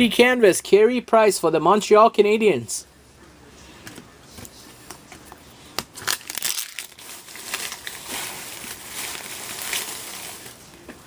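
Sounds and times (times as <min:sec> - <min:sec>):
wrapper crinkling: 0:06.0 - 0:10.6.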